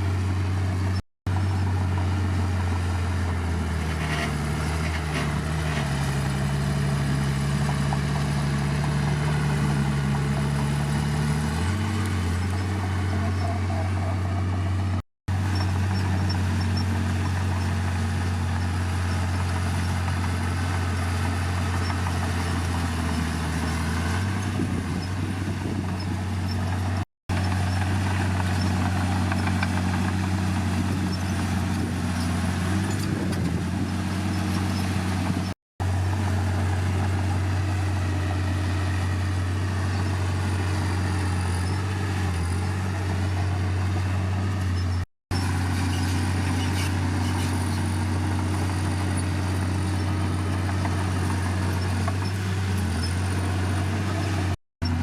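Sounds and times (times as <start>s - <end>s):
heavy diesel engine running: 0.0s - 55.0s.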